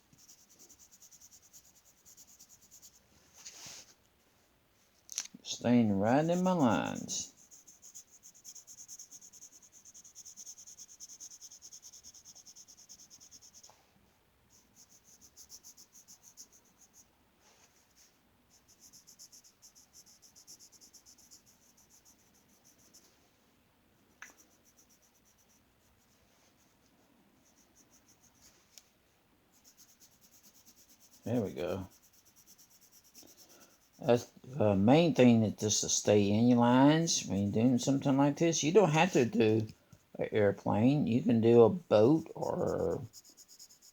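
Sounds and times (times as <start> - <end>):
pencil shading on paper: 0.0 - 3.0, 5.7 - 13.8, 14.5 - 17.1, 18.5 - 23.1, 24.3 - 28.6, 29.5 - 34.4, 42.2 - 43.9.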